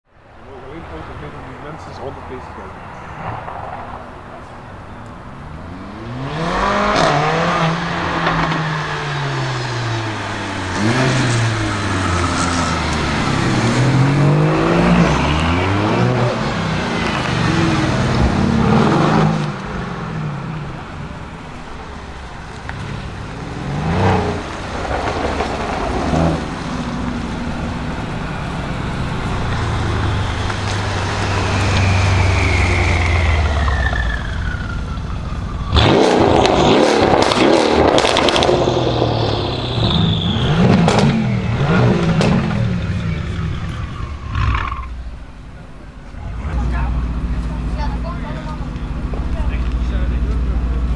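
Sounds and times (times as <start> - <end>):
car engine revving: 0.4 - 50.9
exhaust pops and bangs: 6.8 - 14.4, 22.4 - 28.2, 29.2 - 50.9.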